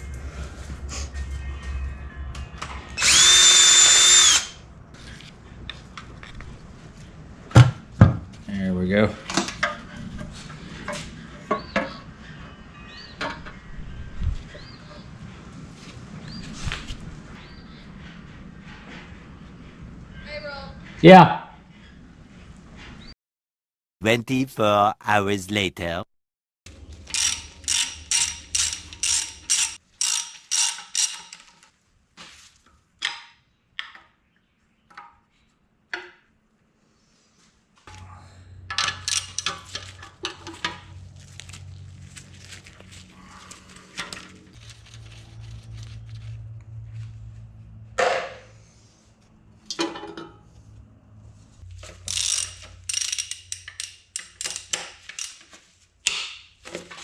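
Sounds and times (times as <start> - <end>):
ratchet wrench clicking: 27.1 - 31.4, 52.0 - 55.4
tools and parts clanking: 27.1 - 31.7, 38.6 - 40.9, 49.7 - 50.4, 51.8 - 55.7.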